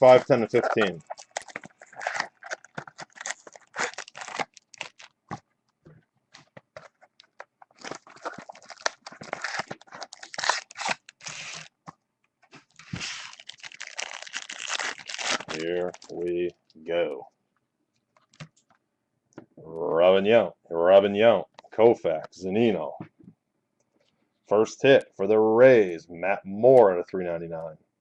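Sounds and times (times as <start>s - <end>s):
wrapper crinkling and tearing: 0.0s - 5.2s, 6.4s - 11.7s, 12.6s - 16.5s.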